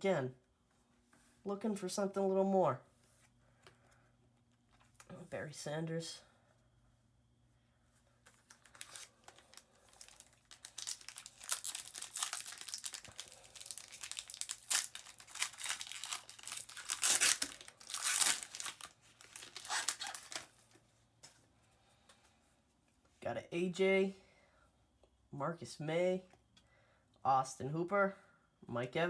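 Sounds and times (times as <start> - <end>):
foil wrapper crinkling and tearing: 8.3 - 20.7.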